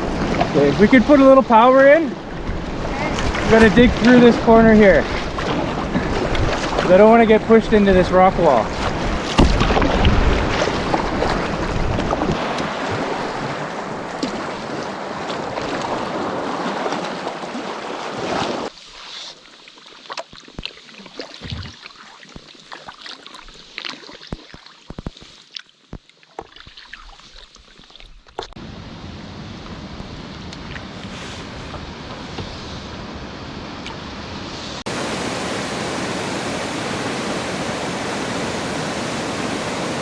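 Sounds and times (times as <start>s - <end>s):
waves washing: 0.0s - 18.7s, 33.8s - 40.0s
wind buffeting microphone: 34.9s - 40.0s.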